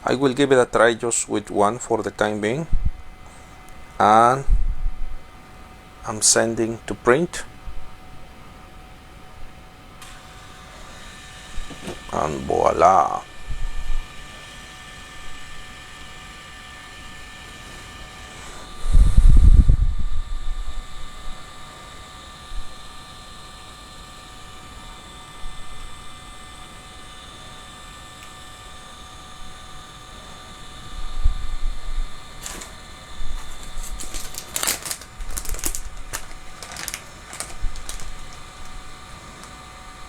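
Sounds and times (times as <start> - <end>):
faint steady whine: 0.0 - 40.0
sharp clicks and rustles: 32.4 - 39.6.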